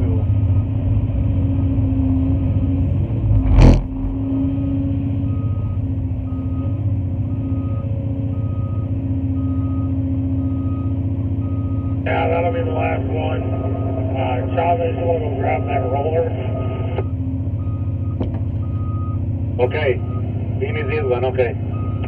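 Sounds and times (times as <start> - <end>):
excavator diesel engine running: 0.0 - 22.0
loud thump: 3.3 - 4.4.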